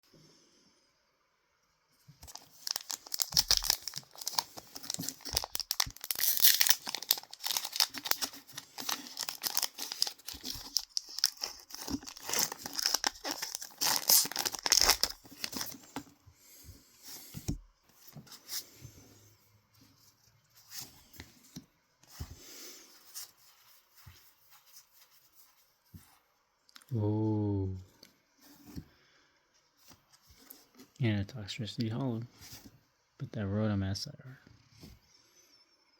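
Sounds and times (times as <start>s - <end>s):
foil wrapper tearing and crinkling: 2.2s - 16.0s
cards rustling: 2.2s - 16.2s.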